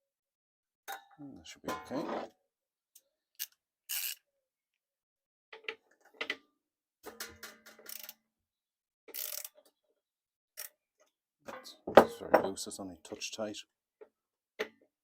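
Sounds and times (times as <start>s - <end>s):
ratchet wrench clicking: 3.4s - 4.2s, 7.9s - 8.1s, 9.1s - 9.6s.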